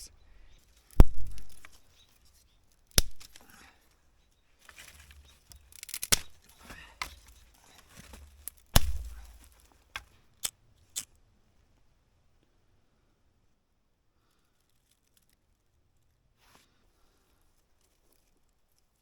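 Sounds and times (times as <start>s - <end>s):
twigs crackling and rustling: 0.0s - 4.0s, 4.6s - 11.1s, 14.5s - 16.1s, 17.1s - 19.0s
dry sticks snapping: 0.7s - 1.8s, 2.9s - 3.6s, 4.6s - 11.1s.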